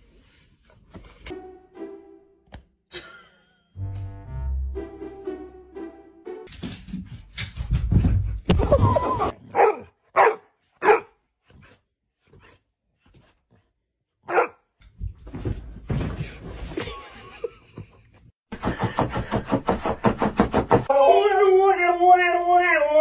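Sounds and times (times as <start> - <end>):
dog barking: 9.5 - 11.2, 14.2 - 14.7.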